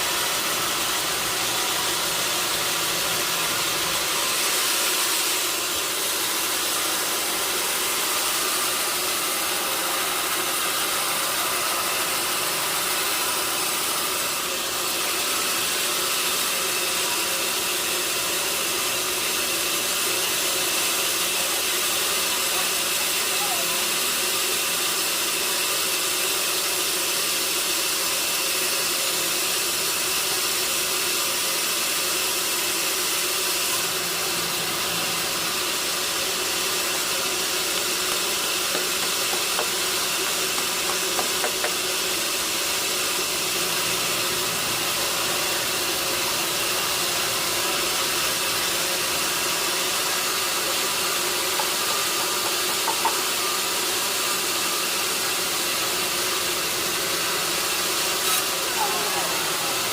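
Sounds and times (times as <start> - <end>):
sawmill machinery hissing and humming: 0.0 - 59.9.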